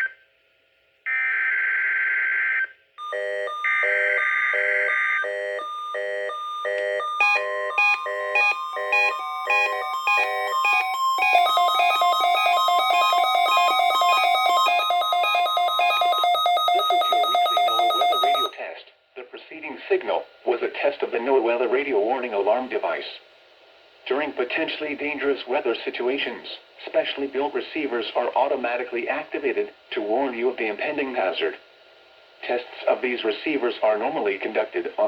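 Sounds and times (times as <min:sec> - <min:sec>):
steady warning alarm tone: 0:03.0 - 0:18.5.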